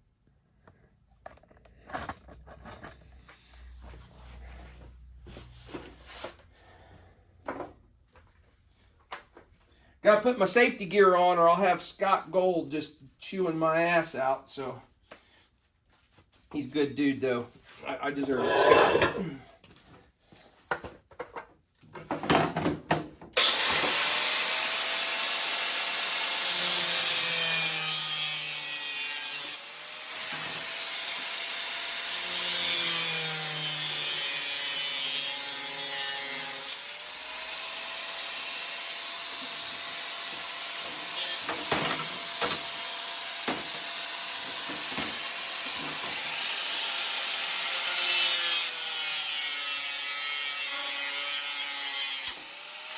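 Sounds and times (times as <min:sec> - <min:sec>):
cutoff wheel grinding metal: 0:18.3 - 0:19.2.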